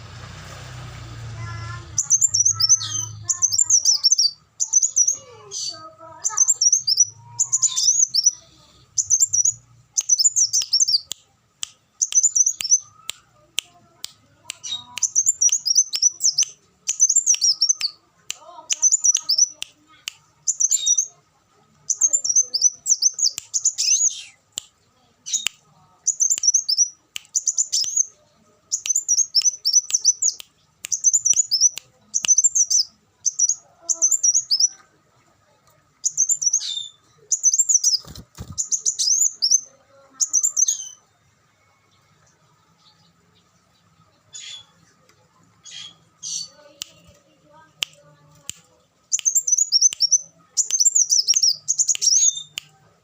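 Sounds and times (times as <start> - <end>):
sunbird twittering: 1.4 - 11.1, 14.6 - 17.9, 36.0 - 40.9.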